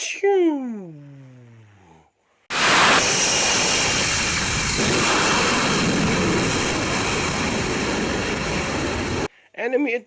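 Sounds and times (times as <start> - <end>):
jet engine roaring: 2.5 - 9.3.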